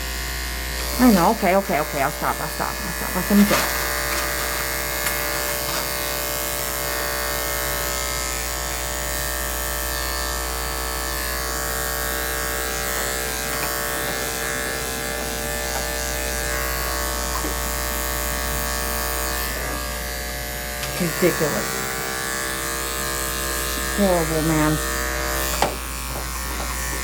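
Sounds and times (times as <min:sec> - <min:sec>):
electric clippers humming: 0:00.0 - 0:27.0.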